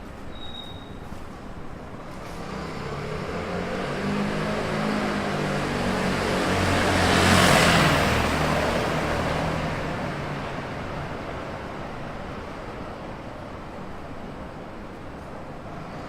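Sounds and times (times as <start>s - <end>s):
street noise: 0.0s - 16.0s
motor vehicle passing: 2.3s - 10.6s.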